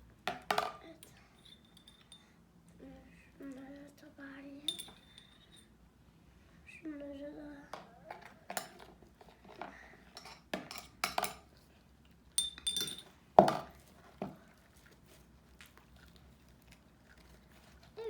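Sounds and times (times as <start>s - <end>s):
utensil clinking against a bowl: 0.3s - 2.3s, 4.7s - 5.8s, 7.8s - 11.6s, 12.3s - 14.4s.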